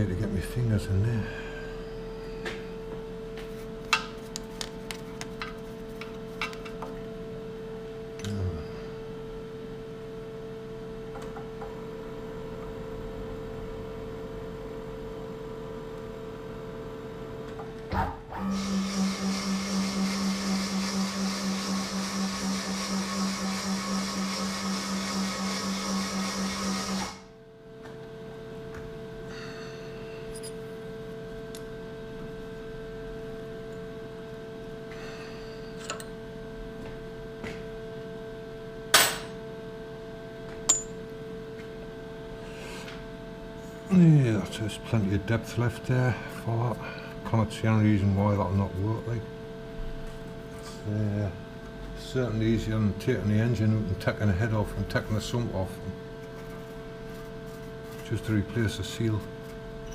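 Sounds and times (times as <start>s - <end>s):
lathe humming: 18.5s - 27.3s
pulsing lathe cutting: 18.6s - 27.2s.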